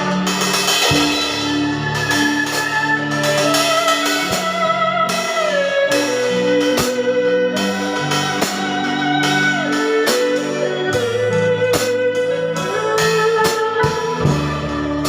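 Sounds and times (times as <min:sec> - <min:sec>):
drum hits: 0:00.0 - 0:05.5
electric guitar melody: 0:00.0 - 0:15.0
keyboard chords and bass: 0:00.0 - 0:15.0.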